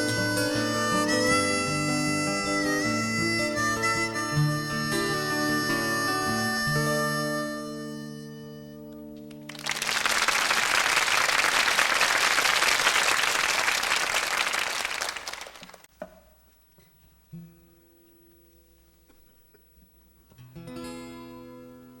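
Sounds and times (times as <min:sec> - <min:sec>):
studio audience applauding: 0:09.4 - 0:15.9.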